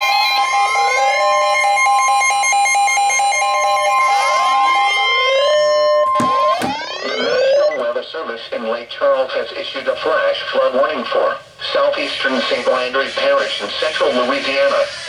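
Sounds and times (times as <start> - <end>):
steady alarm tone: 0.0 - 7.9
rising siren sweeps: 3.2 - 7.8.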